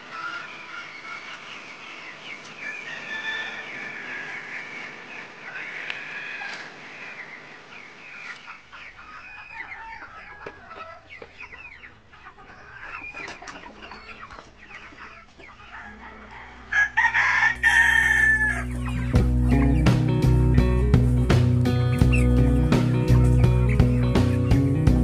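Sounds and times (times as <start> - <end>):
chickens clucking and squawking: 0.0 - 25.0
rooster crowing: 2.6 - 4.6, 15.7 - 18.8
background music with beat: 19.1 - 25.0.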